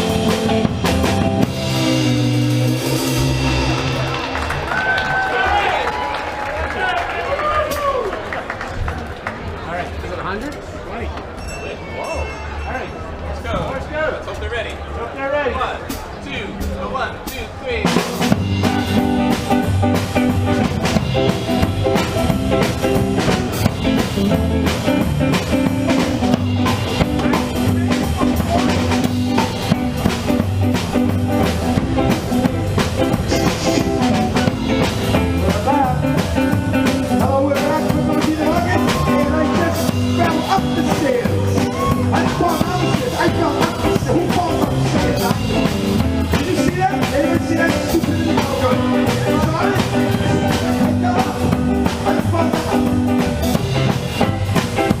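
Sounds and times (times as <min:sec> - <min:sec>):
electric guitar: 0:00.0 - 0:05.6, 0:18.2 - 0:55.0
drum kit beat: 0:00.0 - 0:05.8, 0:15.9 - 0:55.0
bass guitar: 0:00.0 - 0:06.2, 0:17.8 - 0:55.0.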